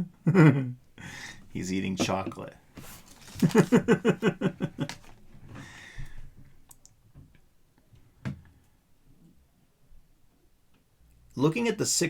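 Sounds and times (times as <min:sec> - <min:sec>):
handling noise of small objects: 0:02.2 - 0:03.9
soft rustle: 0:02.7 - 0:04.0.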